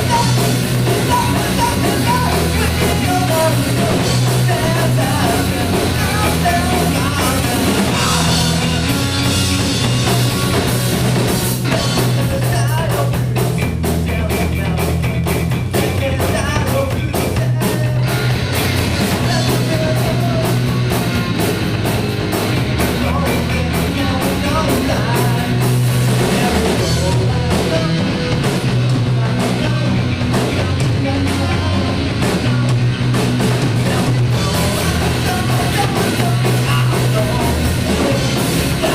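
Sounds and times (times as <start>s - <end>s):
person singing: 0.0s - 10.8s, 14.0s - 21.4s, 22.9s - 33.0s, 33.6s - 38.9s
live rock band playing: 0.0s - 38.9s.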